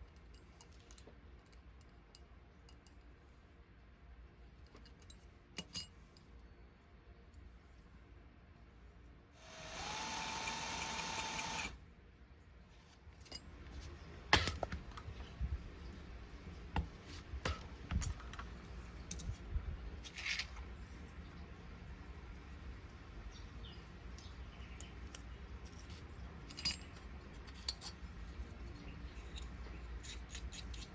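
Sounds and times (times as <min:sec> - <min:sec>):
power drill whining: 0:09.4 - 0:11.8.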